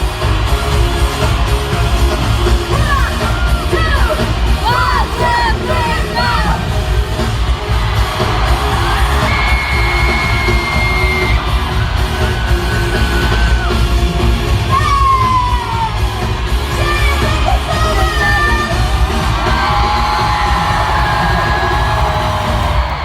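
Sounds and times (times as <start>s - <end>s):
fans yelling and whooping: 0.0s - 23.0s
loud amplified pop music: 0.0s - 23.0s.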